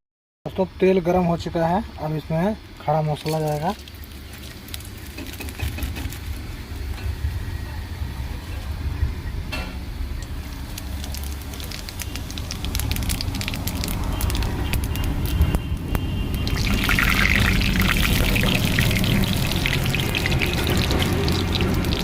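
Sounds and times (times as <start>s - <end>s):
oil sizzling in a pan: 10.3s - 15.3s, 16.4s - 22.0s.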